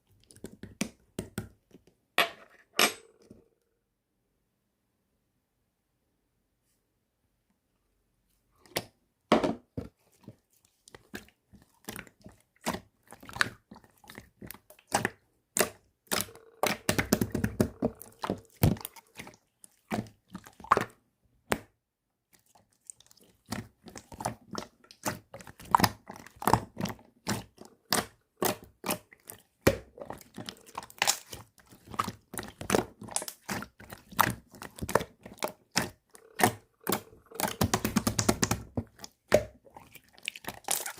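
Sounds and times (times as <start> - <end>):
slime squeezed with sticky pops: 22.4 - 40.9.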